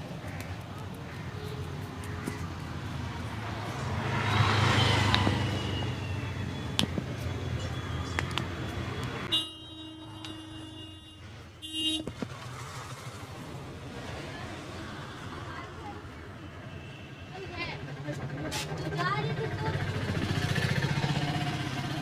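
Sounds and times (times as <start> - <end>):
street traffic: 0.0 - 22.0
vehicle horn honking: 9.2 - 12.1.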